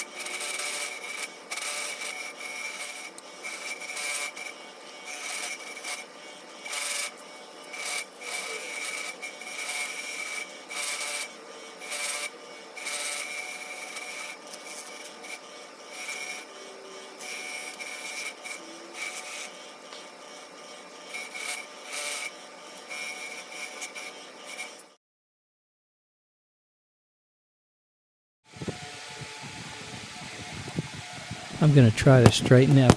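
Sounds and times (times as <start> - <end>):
wire wheel scratching metal: 0.0 - 24.9, 28.5 - 32.9
power tool motor whine: 0.0 - 25.0, 28.5 - 32.9.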